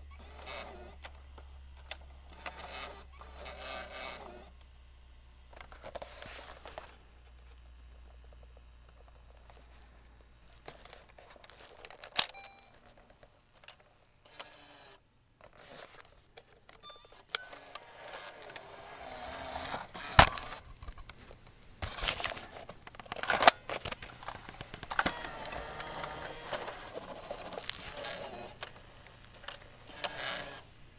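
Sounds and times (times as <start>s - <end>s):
cassette rattling and scraping: 5.6s - 13.9s, 15.4s - 30.7s
cassette player eject clicks: 10.5s - 14.6s, 15.4s - 30.7s.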